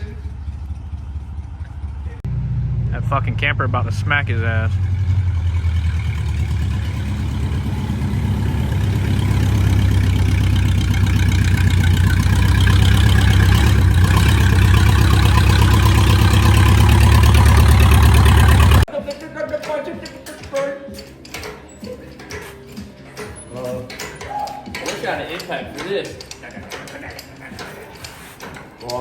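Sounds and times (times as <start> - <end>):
vehicle engine running: 0.0 - 18.9.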